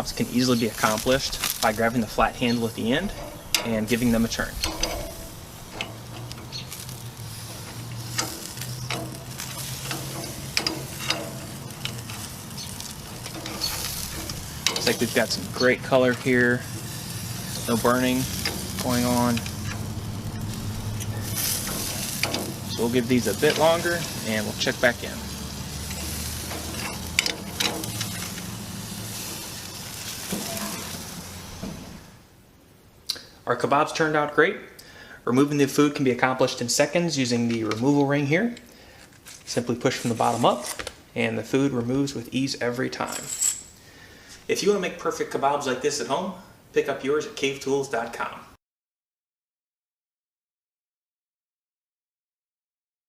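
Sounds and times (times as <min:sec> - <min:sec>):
sharp crackles: 0:00.0 - 0:32.2
kebabs sizzling on grill: 0:00.0 - 0:32.3
skewers clicking on metal rack: 0:00.8 - 0:31.0.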